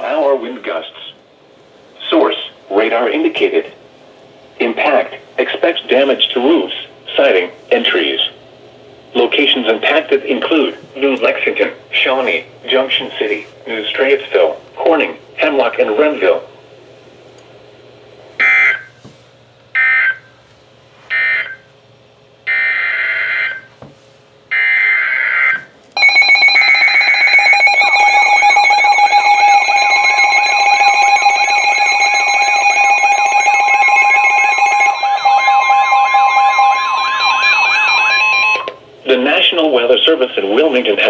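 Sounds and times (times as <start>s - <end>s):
steady shrill alarm tones: 18.4s - 18.9s, 19.7s - 20.4s, 21.1s - 21.7s, 22.4s - 23.7s, 24.5s - 38.7s
warbling siren-like alarm tones: 18.4s - 19.0s, 19.7s - 20.4s, 21.1s - 21.7s, 22.5s - 23.7s, 24.5s - 38.8s
steady attention tone: 26.0s - 39.8s.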